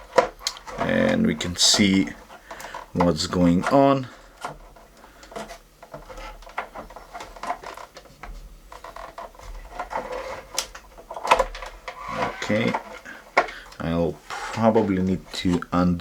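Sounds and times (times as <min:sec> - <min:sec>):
plastic parts clicking and rattling: 0:00.0 - 0:16.0.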